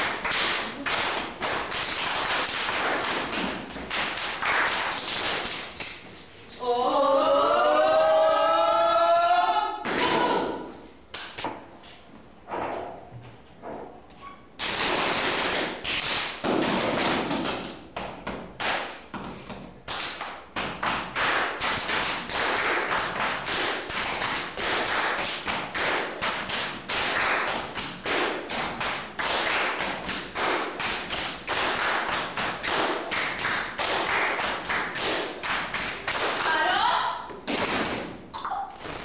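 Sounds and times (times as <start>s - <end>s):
body percussion slaps and claps: 0.0s - 6.1s, 11.1s - 11.6s, 14.6s - 38.6s.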